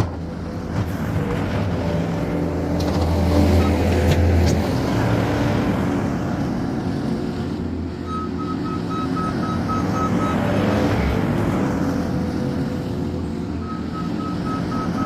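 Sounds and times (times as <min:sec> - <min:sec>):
reversing alarm beeping: 0:08.1 - 0:10.4, 0:13.6 - 0:15.0.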